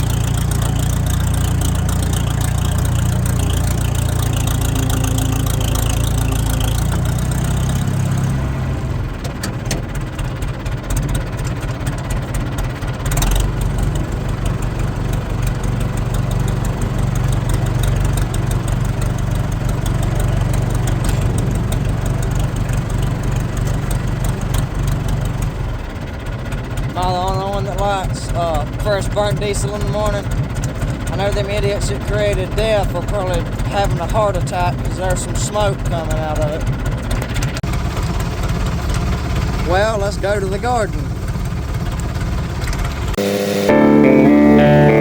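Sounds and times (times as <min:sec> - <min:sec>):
engine knock: 0:00.0 - 0:43.2
tractor diesel engine idling: 0:00.0 - 0:45.0.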